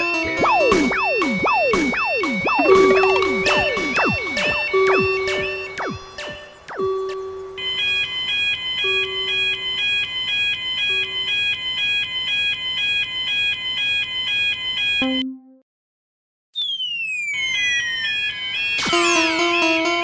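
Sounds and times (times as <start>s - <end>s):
low held tone: 0.0s - 7.6s
railroad crossing bell ringing: 8.8s - 9.9s.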